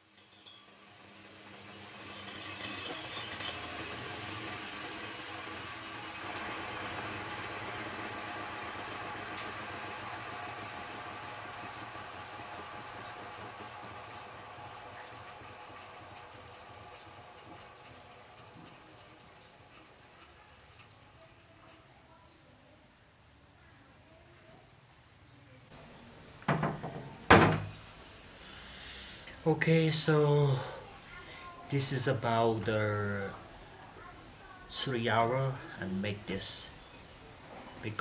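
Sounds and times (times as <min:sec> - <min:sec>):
metal lathe humming and rattling: 0:00.0 - 0:21.9.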